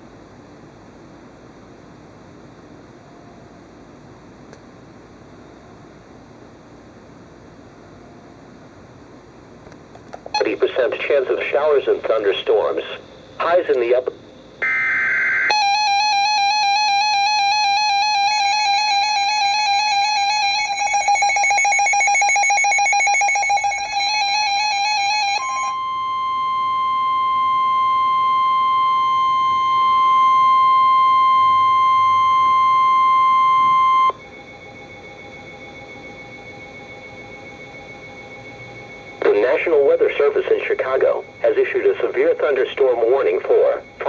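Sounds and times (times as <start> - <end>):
steady warning alarm tone: 10.3 - 10.8, 14.6 - 44.0
warbling electronic alarm tone: 14.6 - 44.0.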